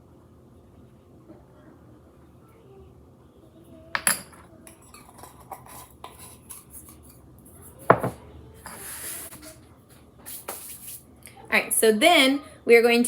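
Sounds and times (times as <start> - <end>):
spoon clinking against bowls: 4.0 - 9.1
knock: 7.9 - 8.2.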